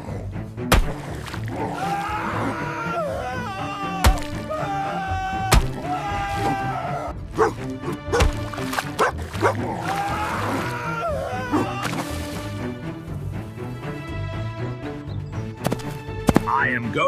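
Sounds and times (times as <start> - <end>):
cartoon background music: 0.0 - 17.0
dog barking: 7.3 - 8.3, 9.0 - 9.6.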